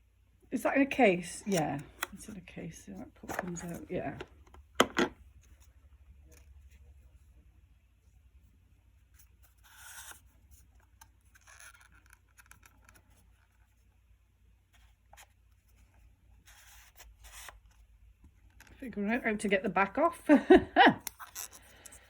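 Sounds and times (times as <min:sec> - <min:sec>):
hands rustling plastic case: 0:01.5 - 0:06.8.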